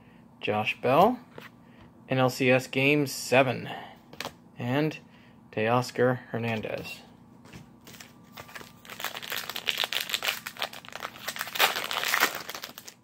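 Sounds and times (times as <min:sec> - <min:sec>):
wrapper crinkling and tearing: 0:07.9 - 0:13.0.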